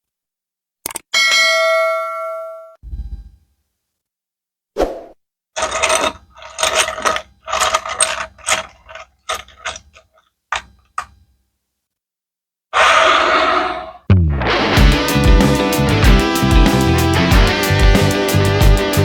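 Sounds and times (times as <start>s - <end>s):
mechanical clicking and rattling: 5.6s - 10.7s.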